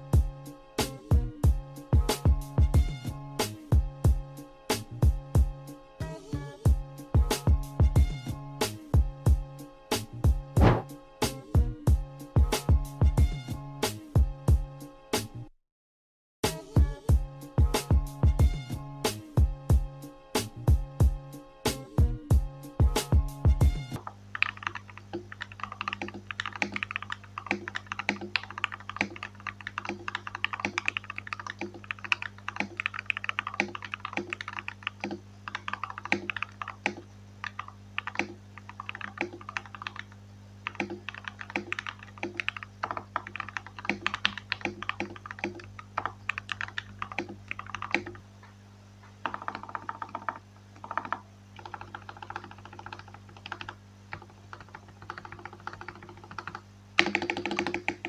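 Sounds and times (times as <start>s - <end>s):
typing on mechanical keyboard: 24.0s - 48.2s, 49.2s - 58.0s.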